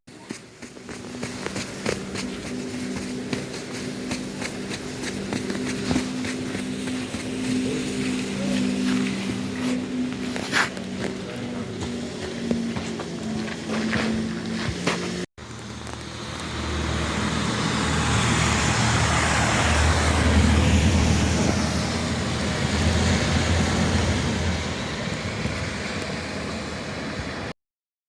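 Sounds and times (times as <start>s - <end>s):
vehicle driving past: 15.5s - 27.5s.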